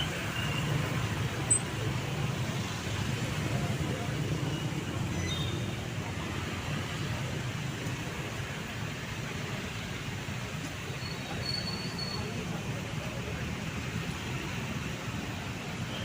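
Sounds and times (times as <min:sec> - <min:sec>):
street traffic: 0:00.0 - 0:16.0.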